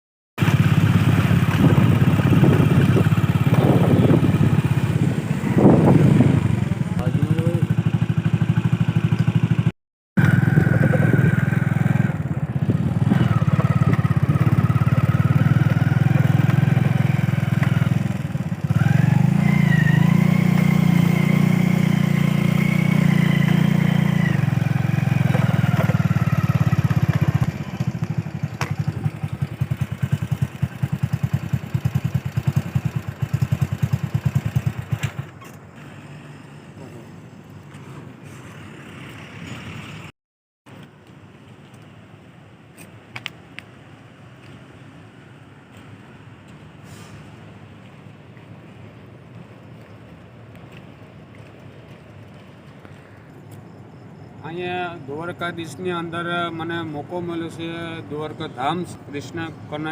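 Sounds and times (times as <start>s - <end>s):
vehicle engine whining and puttering: 0.4s - 40.1s.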